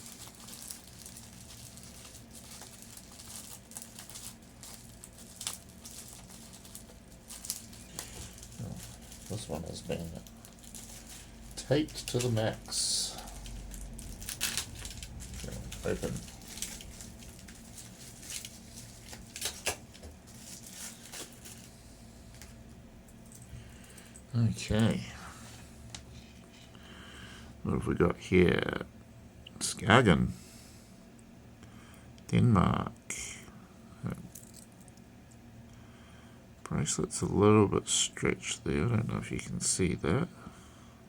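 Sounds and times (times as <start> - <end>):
wrapping rustling and crinkling: 0.0 - 25.0
taped wrapping being torn open: 13.4 - 21.5.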